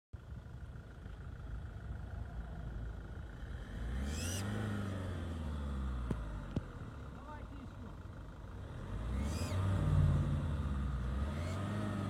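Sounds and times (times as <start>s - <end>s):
vehicle engine rumbling: 0.1s - 12.0s.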